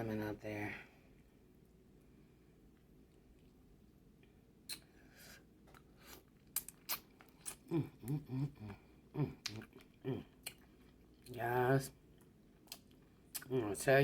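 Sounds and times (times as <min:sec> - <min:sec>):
chewing and picking crab meat: 0:02.6 - 0:13.6
person humming with enjoyment: 0:07.6 - 0:10.3.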